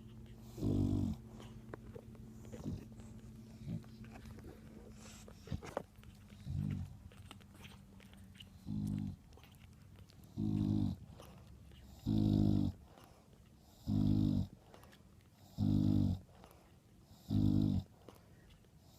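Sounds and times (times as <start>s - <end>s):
dog snoring: 0.0s - 1.6s, 2.3s - 7.0s, 8.5s - 9.5s, 10.3s - 18.2s.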